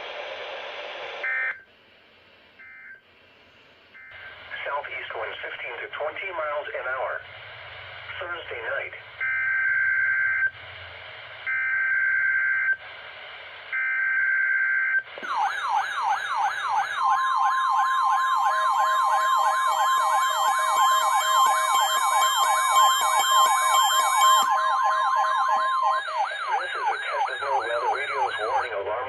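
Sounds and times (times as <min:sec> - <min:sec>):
steady alarm tone: 0:13.8 - 0:29.0.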